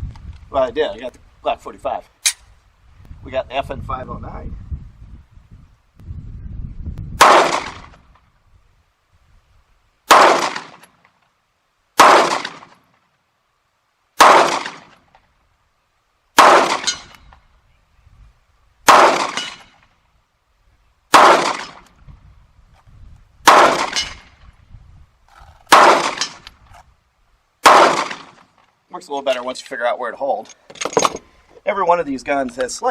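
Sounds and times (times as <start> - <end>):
pistol shots: 7.2 - 8.0, 10.1 - 10.9, 12.0 - 12.8, 14.2 - 15.0, 16.4 - 17.2, 18.9 - 19.8, 21.1 - 21.9, 23.4 - 24.3, 25.7 - 26.4, 27.6 - 28.5.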